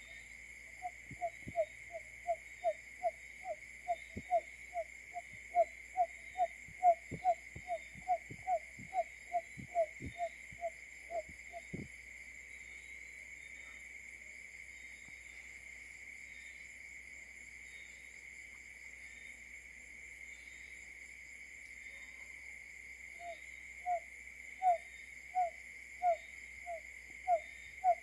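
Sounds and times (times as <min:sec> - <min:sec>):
bird hooting notes: 0:05.2 - 0:11.3.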